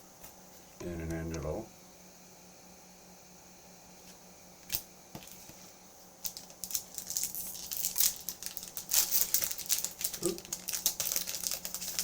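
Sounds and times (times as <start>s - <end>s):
foil wrapper crinkling and tearing: 6.2s - 12.0s.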